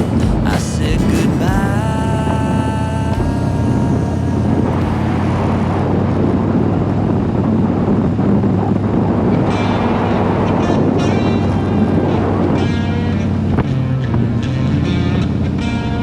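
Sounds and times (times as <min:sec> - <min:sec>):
held sung note: 0:00.0 - 0:06.0
motorcycle engine running: 0:00.0 - 0:08.6
wind rush: 0:00.0 - 0:14.4.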